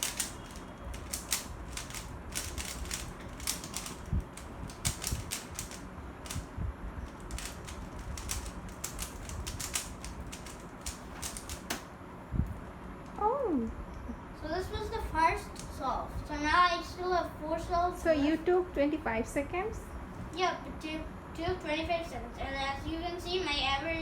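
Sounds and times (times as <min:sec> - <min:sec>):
puzzle cube plastic clicks: 0:00.0 - 0:06.5, 0:07.1 - 0:11.8.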